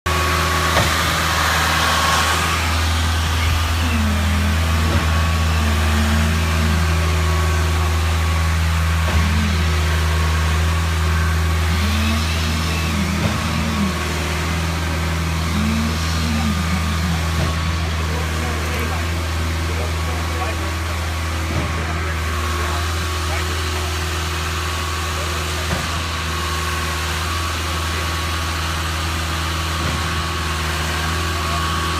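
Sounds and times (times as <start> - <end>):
heavy engine humming: 0.0 - 31.9
wavering tones: 2.5 - 19.0.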